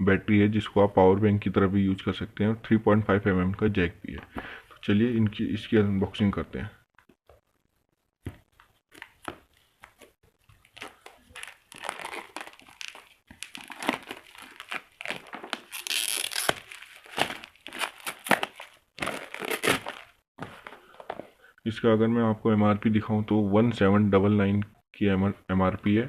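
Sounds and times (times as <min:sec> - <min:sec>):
packaging crinkling and crackling: 0:08.8 - 0:20.7
packaging tearing: 0:10.6 - 0:20.2.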